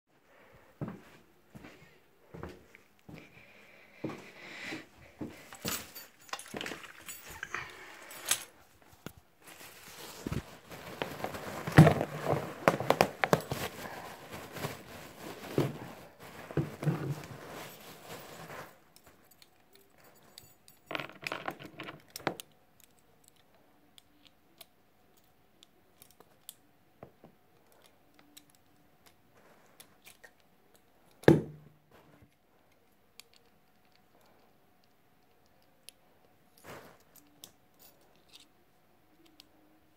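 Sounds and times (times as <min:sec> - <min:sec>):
handcuffs jangling and clicking: 0:05.4 - 0:08.6, 0:18.8 - 0:23.5, 0:37.0 - 0:38.5.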